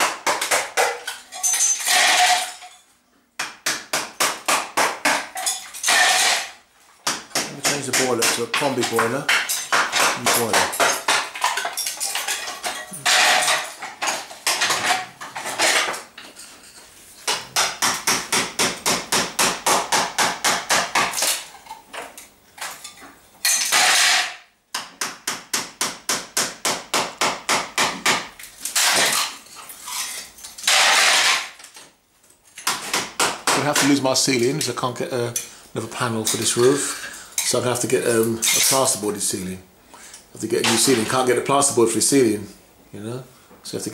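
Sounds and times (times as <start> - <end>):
rapid hand hammering: 0.0 - 1.0, 3.4 - 5.3, 7.0 - 11.3, 17.3 - 21.2, 24.7 - 29.0, 32.6 - 34.0
breaking and scraping: 0.0 - 2.9, 5.2 - 6.6, 7.7 - 17.6, 21.1 - 24.4, 28.4 - 32.9, 40.5 - 41.4.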